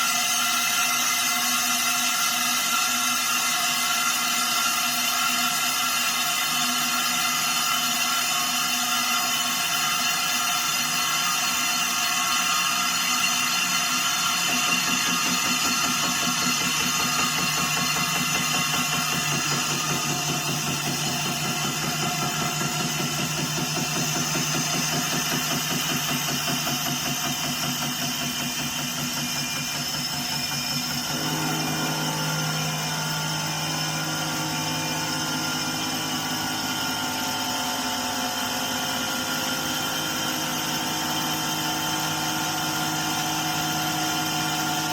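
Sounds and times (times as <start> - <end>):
machine mechanical hum: 12.0 - 44.9.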